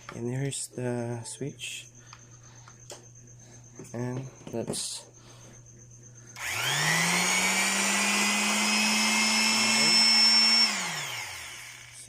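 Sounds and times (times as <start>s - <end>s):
electric sander motor whining: 6.4s - 12.0s.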